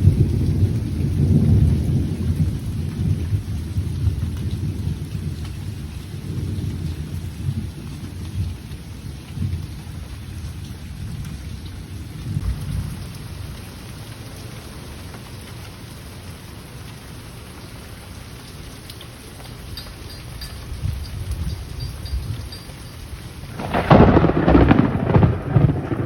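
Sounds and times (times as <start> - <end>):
low rolling thunder: 0.0 - 13.7, 20.4 - 26.0
steady rain falling: 0.0 - 26.0.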